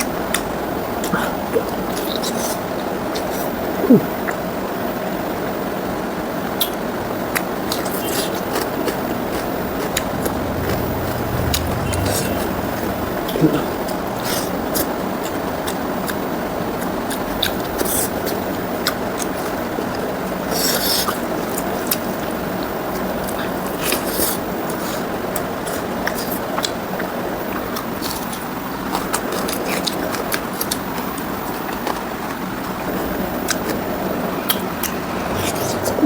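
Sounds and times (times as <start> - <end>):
steady background noise: 6.4 - 16.2.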